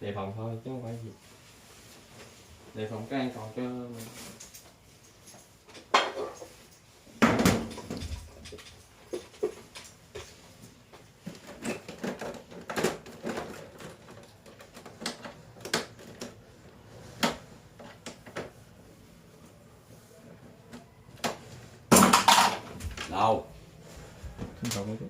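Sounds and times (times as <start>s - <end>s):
tools clicking and knocking: 7.3s - 10.4s.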